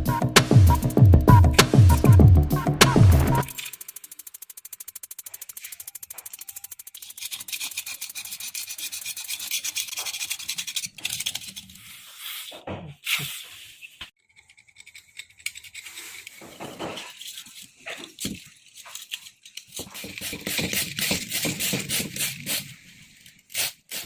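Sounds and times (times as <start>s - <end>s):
scrubbing on a hard surface: 5.6s - 14.0s.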